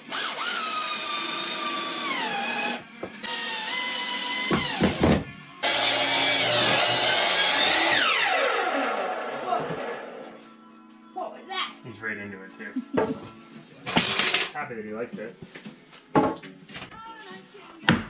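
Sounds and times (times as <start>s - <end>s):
power drill motor whine: 0.0s - 5.0s, 5.6s - 10.3s.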